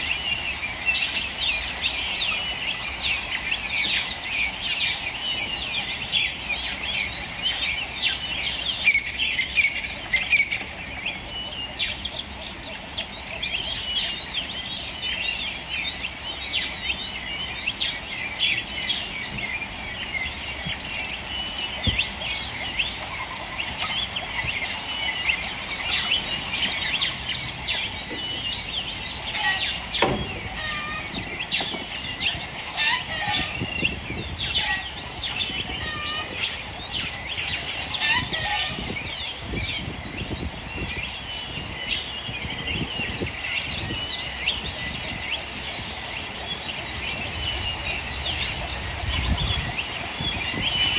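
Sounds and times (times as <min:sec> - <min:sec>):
birds chirping: 0:00.0 - 0:50.9
sharp knock: 0:30.0 - 0:30.8.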